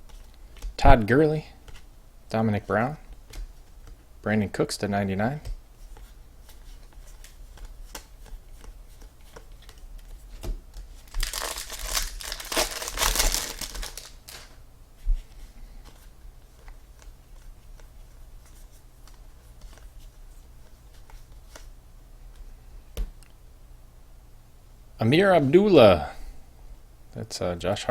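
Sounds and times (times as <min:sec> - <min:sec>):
cards clicking and rustling: 0:06.0 - 0:14.5
foil wrapper crinkling and tearing: 0:11.0 - 0:14.6.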